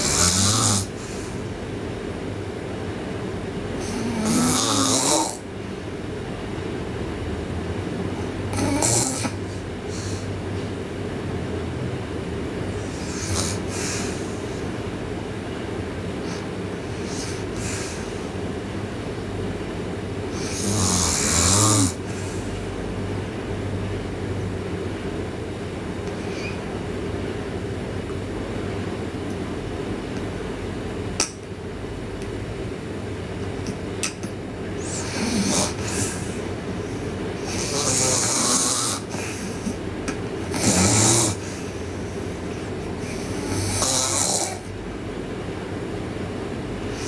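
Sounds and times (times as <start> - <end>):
girl snoring loudly: 0.0 - 1.1, 3.8 - 5.5, 8.2 - 9.4, 12.7 - 14.6, 16.3 - 18.2, 20.3 - 22.5, 34.8 - 39.8, 40.4 - 44.7
steady low hum: 0.0 - 47.0
faint breath: 1.0 - 1.5, 9.4 - 10.4, 12.7 - 14.8, 22.0 - 22.8, 41.3 - 43.8.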